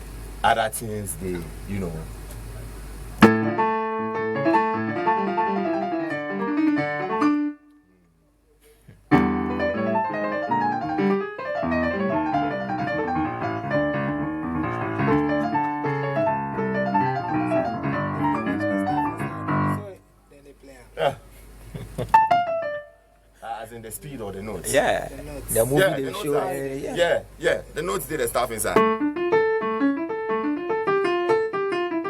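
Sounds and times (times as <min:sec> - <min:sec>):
solo piano: 0:03.2 - 0:07.7, 0:09.1 - 0:19.9, 0:22.1 - 0:23.1, 0:28.8 - 0:32.0.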